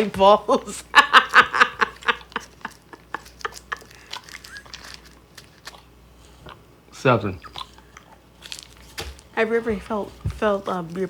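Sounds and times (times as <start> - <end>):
candies clacking against teeth: 1.2 - 6.6, 7.4 - 9.4
wet mouth noises: 2.2 - 9.4.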